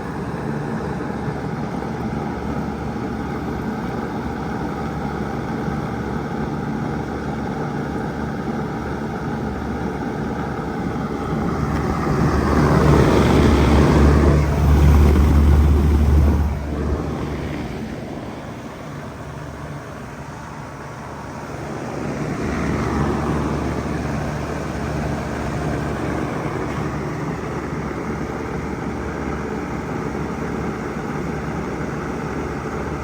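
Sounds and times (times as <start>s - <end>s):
heat pump hum: 0.0s - 33.0s
rushing air noise: 10.8s - 18.9s.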